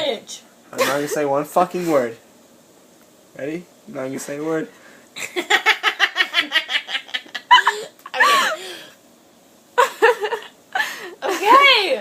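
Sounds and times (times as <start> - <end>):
woman laughing hard: 5.2 - 8.9, 9.8 - 11.7.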